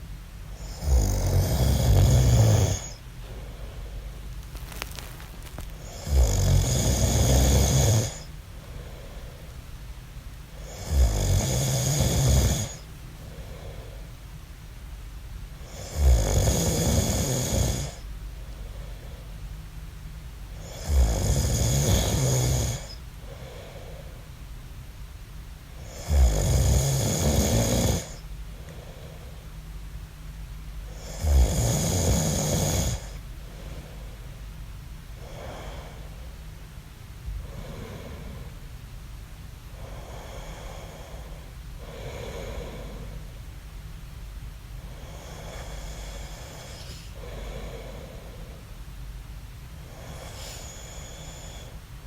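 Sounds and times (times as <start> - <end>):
quiet breathing: 0.4 - 14.4, 16.7 - 19.9, 20.5 - 24.4, 26.8 - 31.4, 32.0 - 38.8, 39.6 - 43.5, 44.7 - 49.0, 49.6 - 52.0
man snoring: 0.6 - 3.0, 5.8 - 8.3, 10.6 - 12.8, 15.6 - 18.0, 20.6 - 23.7, 25.8 - 28.2, 31.0 - 33.2, 44.9 - 48.3, 49.9 - 51.7.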